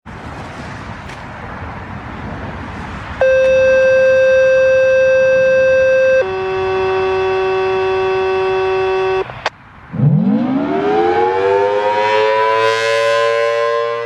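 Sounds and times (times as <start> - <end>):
steady electronic tone: 3.2 - 11.8.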